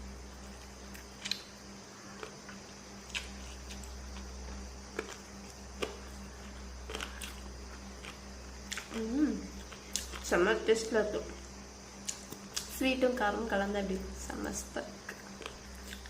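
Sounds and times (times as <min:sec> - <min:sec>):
steady low hum: 0:00.0 - 0:16.0
person chewing chicken: 0:02.2 - 0:10.2.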